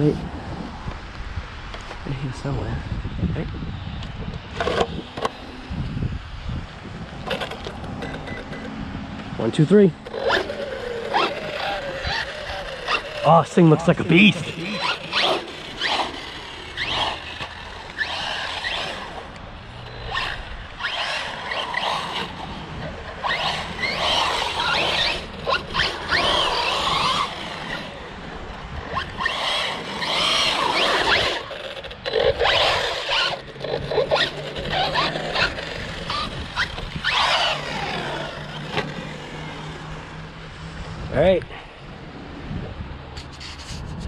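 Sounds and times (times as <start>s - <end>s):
rc car motor whining: 3.8s - 6.1s, 7.0s - 40.4s
tires squealing on concrete: 7.2s - 41.7s.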